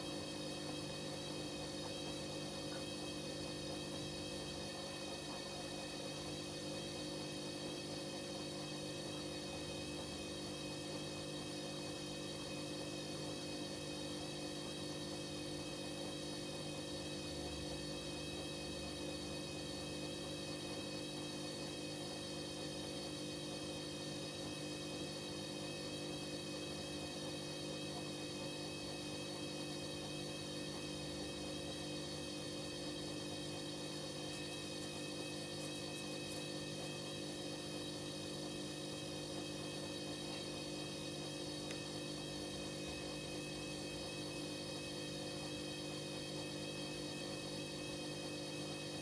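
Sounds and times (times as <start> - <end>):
washing machine humming: 12.4 - 47.2.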